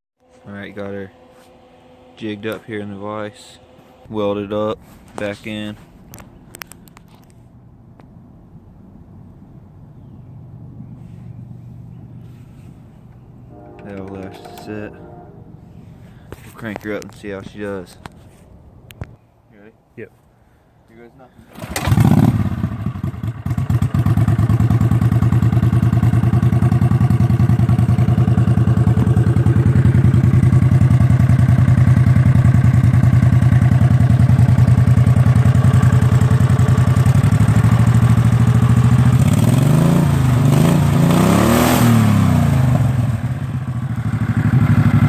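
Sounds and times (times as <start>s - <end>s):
mower engine idling: 21.5s - 41.1s, 42.4s - 45.0s
engine revving: 21.5s - 45.0s.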